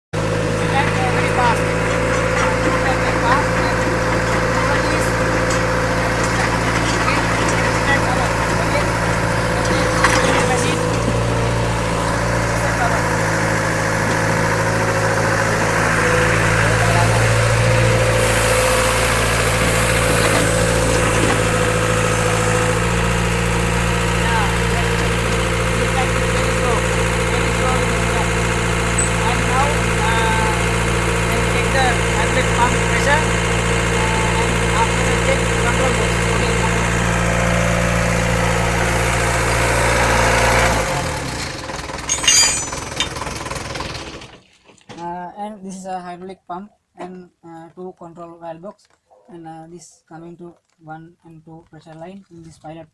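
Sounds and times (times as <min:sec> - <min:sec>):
diesel engine running: 0:00.0 - 0:44.4
sharp metallic clink: 0:42.1 - 0:43.0.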